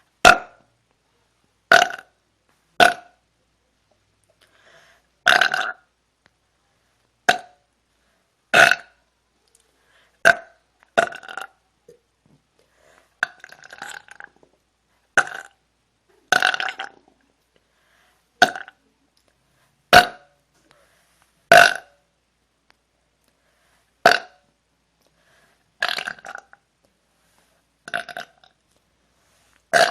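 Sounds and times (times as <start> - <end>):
woman burping: 5.2 - 5.8.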